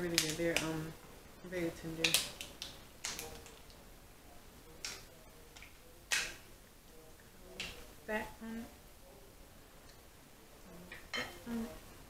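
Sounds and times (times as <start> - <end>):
shells cracking while eating: 0.1 - 0.7, 2.0 - 3.8, 4.8 - 6.4.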